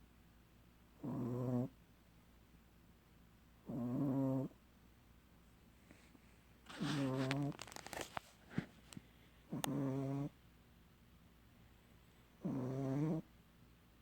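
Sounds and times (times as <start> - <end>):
dog snoring: 1.0 - 1.8, 3.6 - 4.6, 6.7 - 7.6, 9.5 - 10.4, 12.4 - 13.3.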